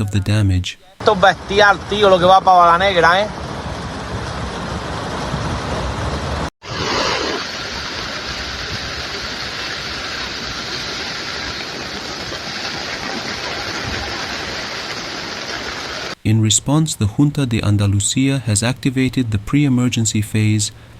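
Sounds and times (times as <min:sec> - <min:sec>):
rushing floodwater roar: 0:01.0 - 0:16.2.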